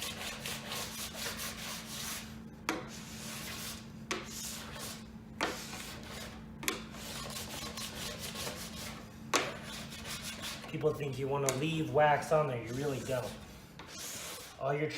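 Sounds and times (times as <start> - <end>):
scraper scraping wax: 2.9 - 10.8, 12.5 - 14.7.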